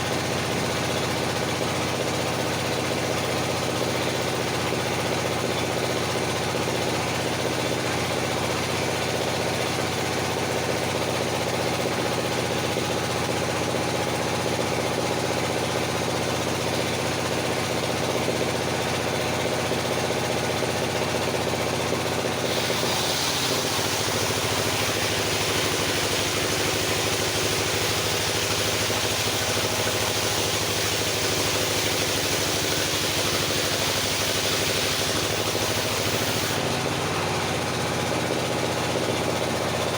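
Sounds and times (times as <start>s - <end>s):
sawmill engine running: 0.0s - 39.9s
harsh hiss of saw cutting: 22.4s - 37.0s.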